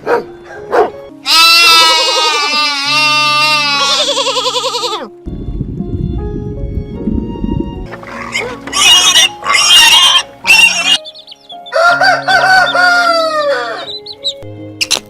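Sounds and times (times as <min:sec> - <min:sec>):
background music: 0:00.0 - 0:15.0
pig squealing: 0:01.2 - 0:05.1, 0:08.0 - 0:11.1, 0:12.6 - 0:14.1
rooster crowing: 0:11.7 - 0:13.9.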